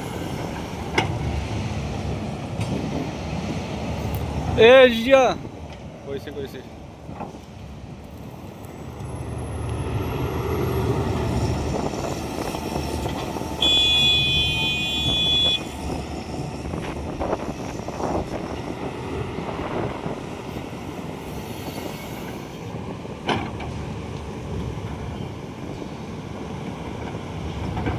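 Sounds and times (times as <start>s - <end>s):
vehicle horn: 13.6s - 15.8s.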